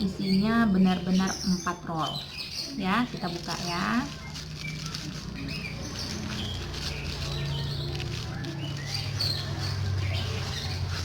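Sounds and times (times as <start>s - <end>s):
packaging rustling and crinkling: 2.5s - 11.0s.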